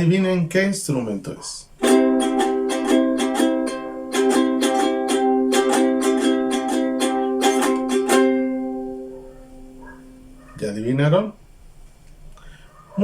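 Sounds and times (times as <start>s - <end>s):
ukulele strumming chords: 1.8s - 10.3s.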